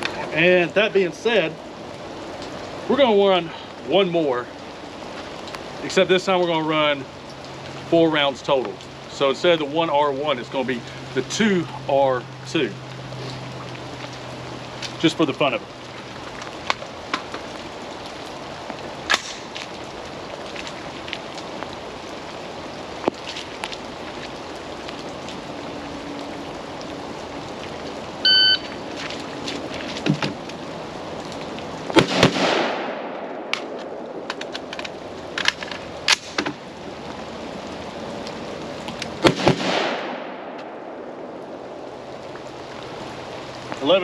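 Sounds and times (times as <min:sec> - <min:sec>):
steady rain: 0:00.0 - 0:44.0
shot timer beep: 0:28.3 - 0:28.7
rifle shots: 0:32.0 - 0:33.5, 0:39.2 - 0:40.5.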